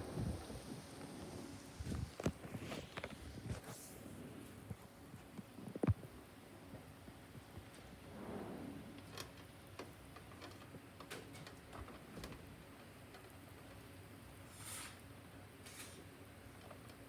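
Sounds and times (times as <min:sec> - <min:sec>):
soft rustle: 0:00.0 - 0:06.2
low steady hiss: 0:00.0 - 0:17.0
faint clicks and taps: 0:09.1 - 0:13.8.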